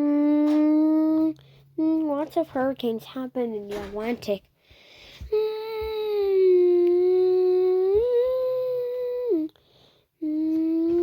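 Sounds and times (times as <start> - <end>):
person humming held notes: 0.0 - 2.1, 5.3 - 9.6, 10.2 - 11.0.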